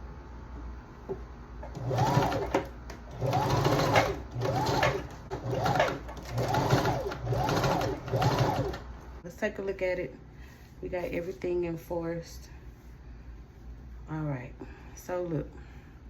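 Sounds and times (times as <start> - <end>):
sewing machine stitching: 1.6 - 8.9.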